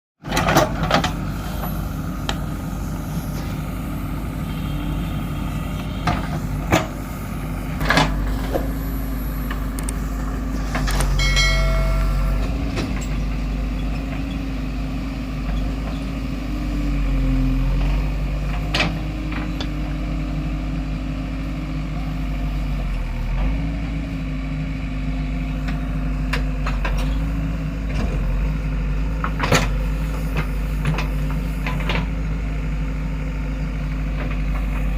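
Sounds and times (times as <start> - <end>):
diesel engine running: 0.2 - 34.9
high whine: 1.5 - 14.4
metal clanks: 10.7 - 14.3.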